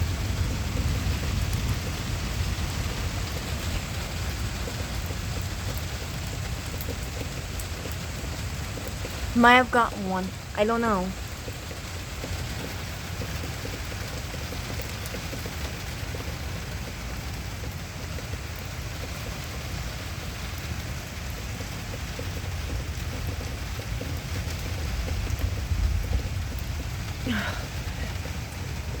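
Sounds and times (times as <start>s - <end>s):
thunder rumble: 0.0s - 6.6s, 22.2s - 29.0s
steady rain: 0.0s - 29.0s.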